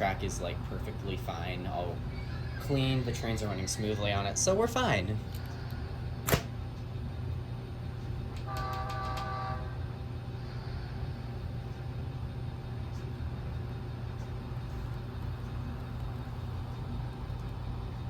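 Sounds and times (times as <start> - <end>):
model train horn blast: 8.5 - 9.8.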